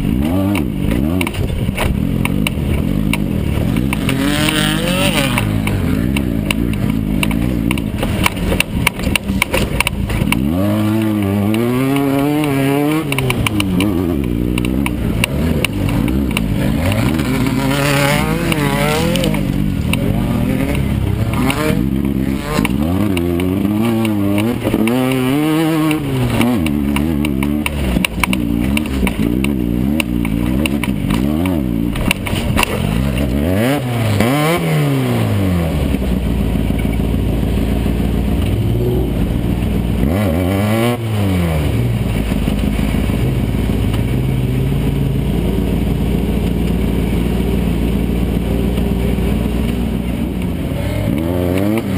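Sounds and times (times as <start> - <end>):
buggy engine revving: 0.0 - 51.9
knocks and rattles: 0.5 - 33.4.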